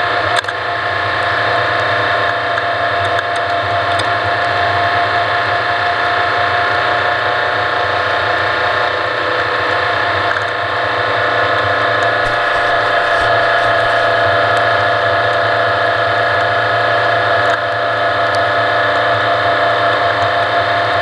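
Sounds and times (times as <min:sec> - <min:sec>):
engine at high revs: 0:06.7 - 0:21.0.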